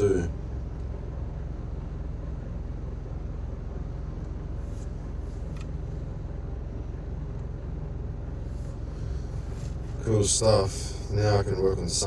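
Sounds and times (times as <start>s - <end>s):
engine idling from inside cab: 0.0s - 12.0s.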